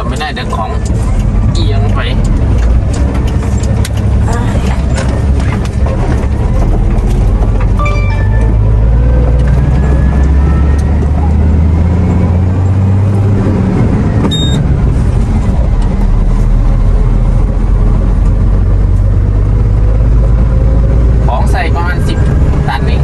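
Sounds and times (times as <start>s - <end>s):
truck engine and road rumble: 0.0s - 23.0s
brief high beep: 7.8s - 9.0s
short tone: 7.8s - 9.4s.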